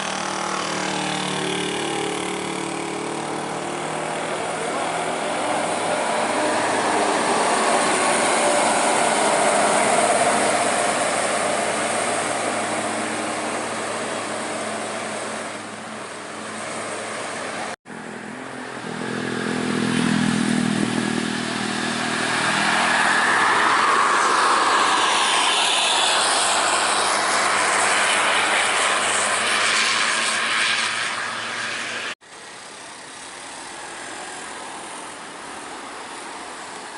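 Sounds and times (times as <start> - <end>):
buses driving past: 0.0 - 36.9.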